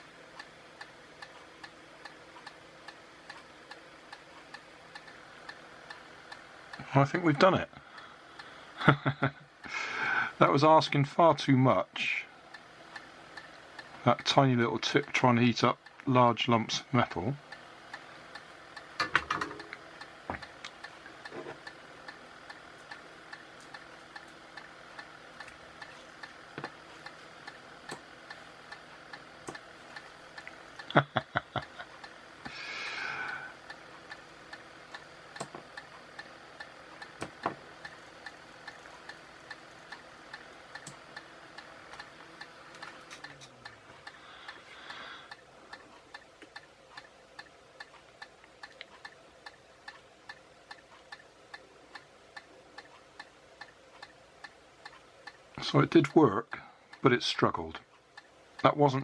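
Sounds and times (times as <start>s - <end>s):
regular ticking: 0.0s - 59.0s
sharp clicks: 37.0s - 55.4s.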